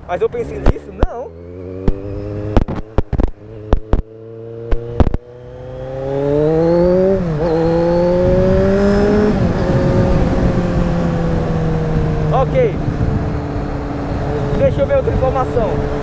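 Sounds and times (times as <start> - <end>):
motorcycle engine accelerating: 0.0 - 16.0
exhaust cracks: 1.8 - 4.1.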